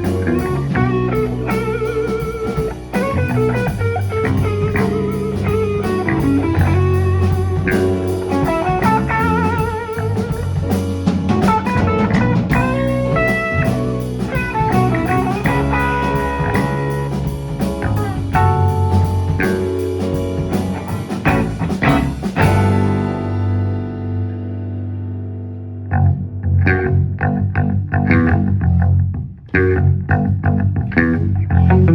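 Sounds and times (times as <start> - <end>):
drum kit steady beat: 0.0 - 23.4
bass guitar: 0.0 - 31.9
blues guitar lead: 0.0 - 31.9.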